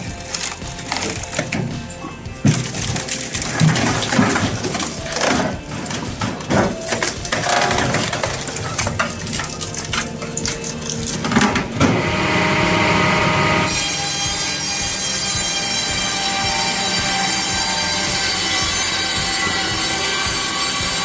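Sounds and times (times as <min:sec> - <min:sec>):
large saw whining: 0:00.0 - 0:21.0
wood knocking and clattering: 0:00.1 - 0:12.0.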